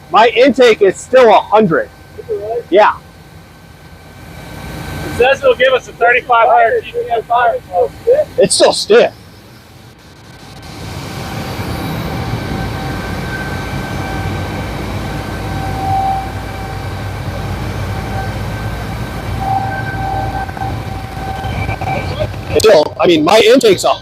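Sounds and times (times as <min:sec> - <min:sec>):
fire engine pump whining: 0:00.0 - 0:24.0.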